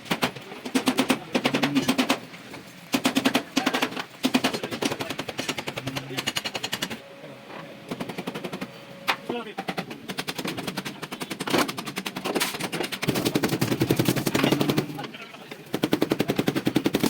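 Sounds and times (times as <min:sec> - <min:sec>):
pneumatic air tool rattling: 0:10.1 - 0:15.0, 0:15.7 - 0:17.0.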